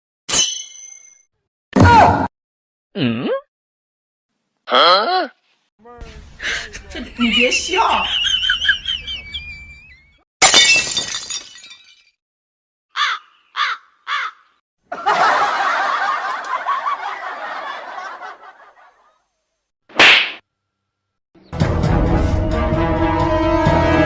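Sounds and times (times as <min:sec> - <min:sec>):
laughter-like chatter: 0:06.1 - 0:10.0, 0:14.9 - 0:19.3.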